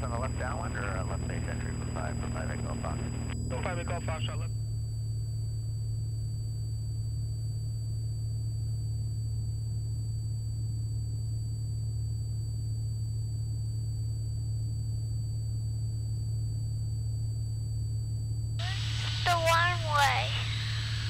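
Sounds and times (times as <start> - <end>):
propeller plane engine drone: 0.0 - 4.5, 18.6 - 21.0
faint high-pitched whine: 0.0 - 4.6, 18.6 - 21.0.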